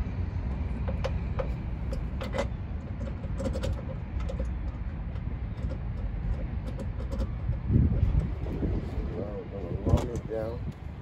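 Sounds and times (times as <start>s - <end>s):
low rumble of wind: 0.0s - 11.0s.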